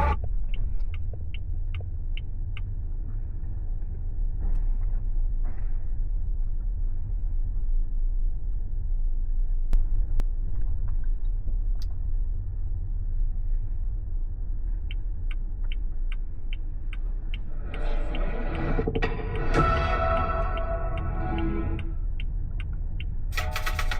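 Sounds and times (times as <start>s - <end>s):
music from car audio: 0.0s - 0.3s, 16.9s - 22.3s
turn signal ticking: 0.0s - 5.4s, 9.7s - 19.5s, 20.1s - 23.9s
road rumble inside car: 0.0s - 23.9s.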